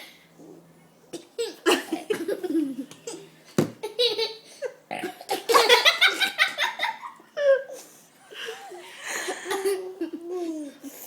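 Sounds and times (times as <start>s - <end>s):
child burping: 4.9s - 5.5s
laughter: 5.4s - 7.7s.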